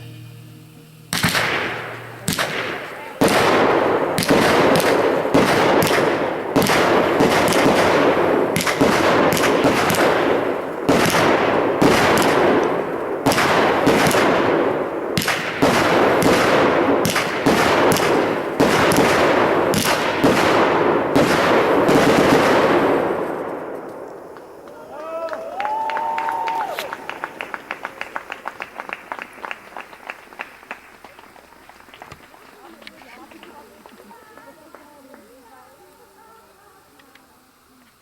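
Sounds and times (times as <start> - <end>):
fireworks barrage: 0.0 - 36.7.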